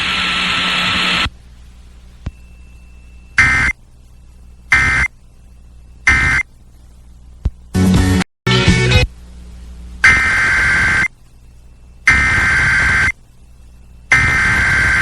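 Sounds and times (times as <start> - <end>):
harsh digital data bursts: 14.1 - 15.0.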